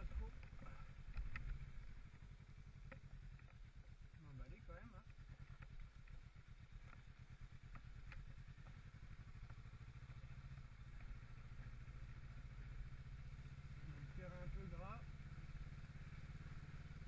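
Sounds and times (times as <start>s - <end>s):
light knocks and clatter: 0.0s - 3.9s, 5.0s - 9.7s
motorcycle engine running at low revs: 0.0s - 17.0s.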